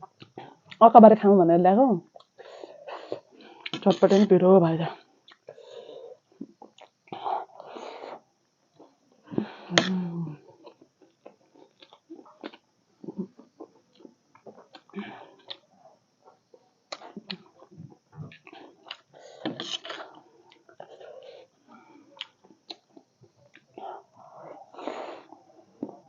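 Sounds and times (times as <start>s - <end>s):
person chewing crunchy snack: 5.0s - 9.0s, 9.7s - 15.6s, 16.9s - 26.0s
breathy sounds: 9.3s - 10.4s, 14.8s - 15.6s.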